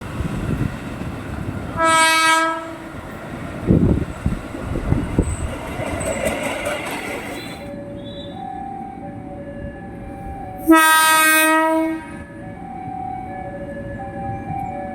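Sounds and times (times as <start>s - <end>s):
train rumbling on track: 0.0s - 14.9s
train horn blast: 1.8s - 2.9s, 10.6s - 12.3s.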